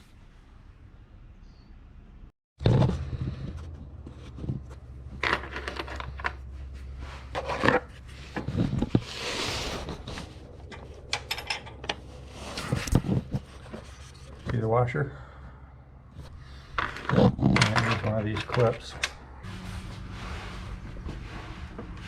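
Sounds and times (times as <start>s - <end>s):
scraping handling noise: 2.6s - 14.9s, 16.1s - 22.0s
small metal parts clinking: 10.7s - 12.0s.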